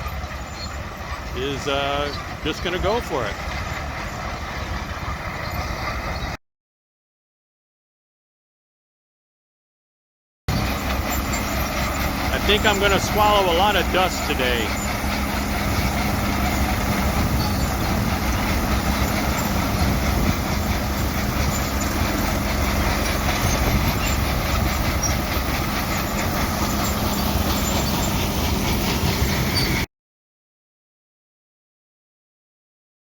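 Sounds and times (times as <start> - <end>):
constant machinery rumble: 0.0 - 6.4, 10.5 - 29.9
engine hum: 0.0 - 6.4, 10.5 - 29.9.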